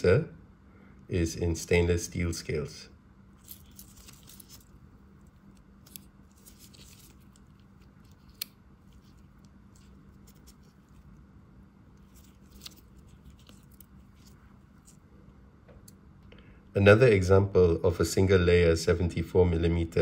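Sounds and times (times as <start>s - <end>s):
steady low hum: 0.0s - 20.0s
pocketknives clicking and rustling: 3.4s - 11.1s, 12.0s - 15.0s.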